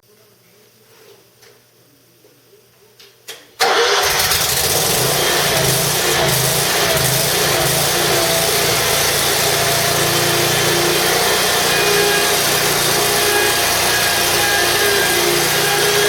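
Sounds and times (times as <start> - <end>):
mower engine running: 3.6 - 16.0.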